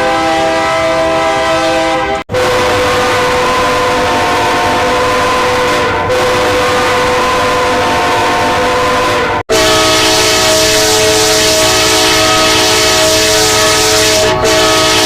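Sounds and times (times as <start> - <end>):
train air horn chord: 0.0 - 15.0.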